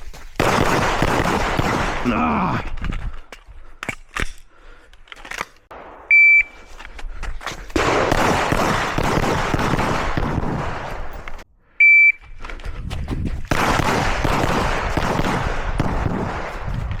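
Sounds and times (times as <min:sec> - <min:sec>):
shot timer beep: 0:06.1 - 0:06.6, 0:11.8 - 0:12.2.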